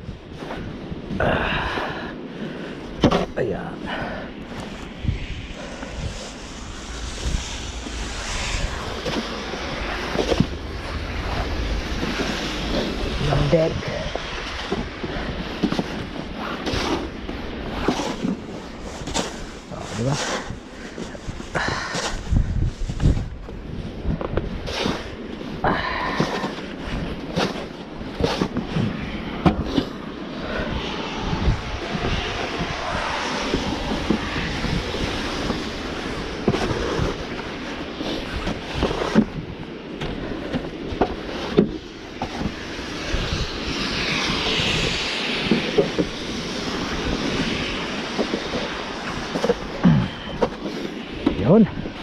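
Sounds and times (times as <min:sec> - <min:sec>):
steady rushing noise: 0:00.0 - 0:52.0
snow shovel scraping and knocking: 0:17.7 - 0:22.2.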